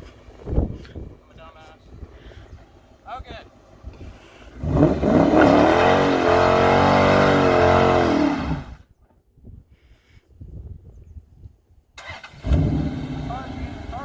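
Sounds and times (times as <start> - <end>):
car engine revving hard: 4.6 - 8.8, 12.3 - 13.9.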